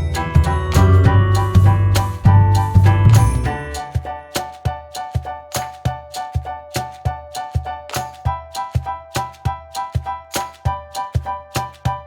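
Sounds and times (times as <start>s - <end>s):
upbeat instrumental music: 0.0s - 12.0s.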